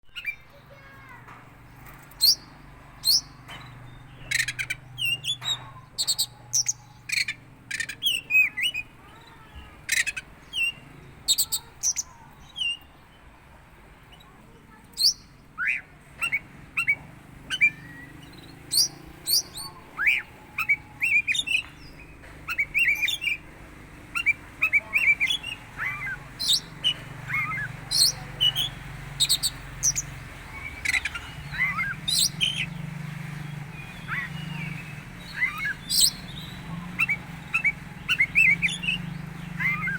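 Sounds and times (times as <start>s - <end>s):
bird chirping and whistling: 2.2s - 8.8s, 15.0s - 23.4s, 24.1s - 39.9s.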